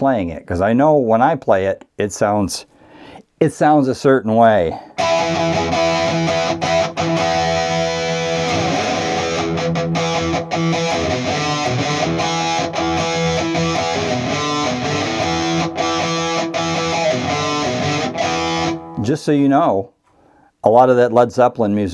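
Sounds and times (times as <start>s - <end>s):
electric guitar strumming chords: 5.0s - 19.0s.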